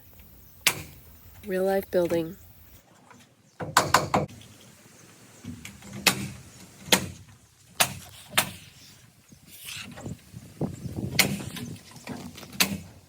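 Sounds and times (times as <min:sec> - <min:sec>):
sharp knocks: 0:03.6 - 0:04.3.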